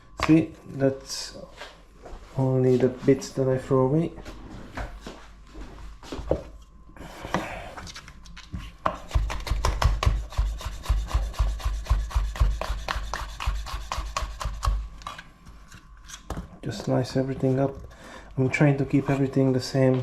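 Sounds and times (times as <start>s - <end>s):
knife chopping on cutting board: 8.8s - 14.8s.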